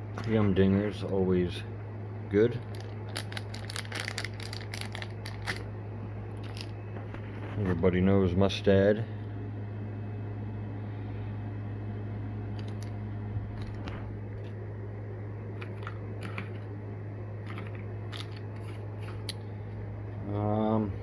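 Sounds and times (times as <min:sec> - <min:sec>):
low electrical hum: 0:00.0 - 0:21.0
clicks and crinkles of packaging: 0:02.6 - 0:05.7, 0:06.4 - 0:06.8, 0:12.6 - 0:14.6, 0:17.4 - 0:19.4.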